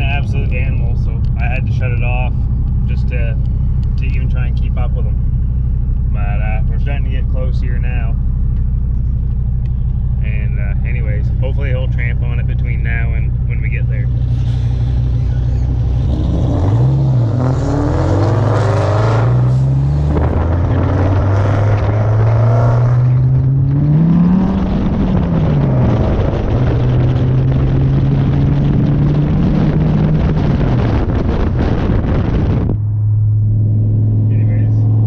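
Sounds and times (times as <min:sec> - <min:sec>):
car engine accelerating: 0:00.0 - 0:35.0
road and wind noise: 0:00.0 - 0:35.0.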